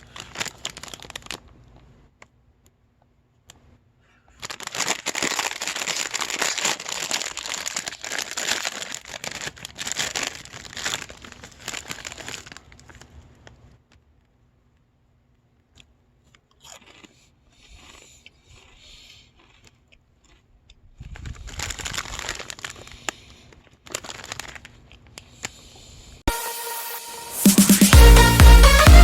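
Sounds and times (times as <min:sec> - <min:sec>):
snack bag crinkling: 0:00.0 - 0:01.8, 0:04.3 - 0:13.5, 0:16.5 - 0:18.0, 0:21.0 - 0:25.3.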